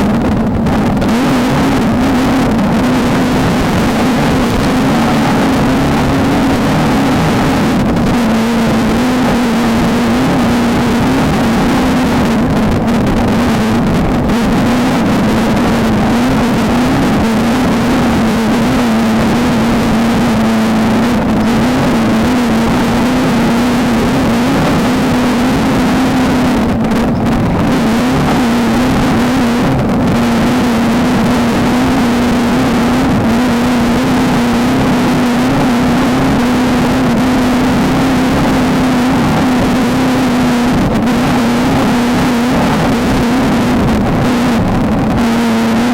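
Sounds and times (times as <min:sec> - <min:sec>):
wind rush: 0:00.0 - 0:45.8
race car engine at high revs: 0:00.0 - 0:45.9
terrain noise: 0:00.0 - 0:45.9.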